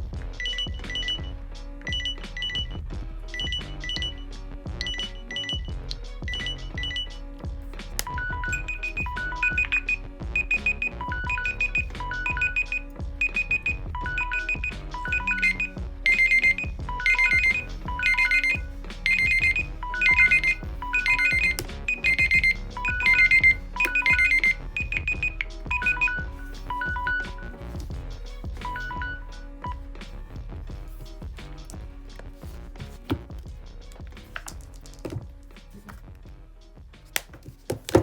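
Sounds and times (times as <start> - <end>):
mobile phone ringtone melody: 8.1 - 27.6, 28.6 - 29.8.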